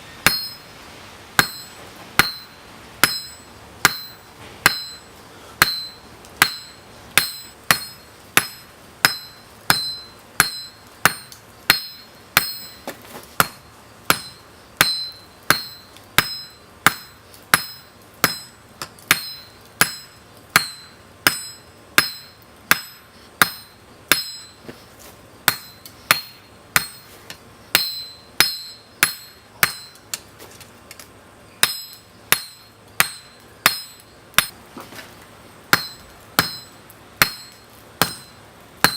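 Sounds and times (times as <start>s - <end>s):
hammer ringing on anvil: 0.2s - 0.7s, 1.4s - 24.6s, 25.5s - 27.1s, 27.8s - 30.0s, 31.6s - 34.5s, 35.7s - 38.9s.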